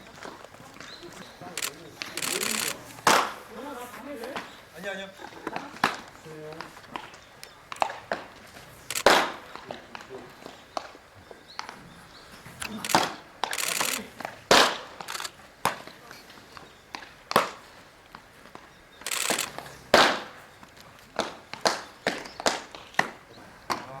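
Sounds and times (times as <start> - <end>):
baseball smacking into mitt: 3.0 - 3.4.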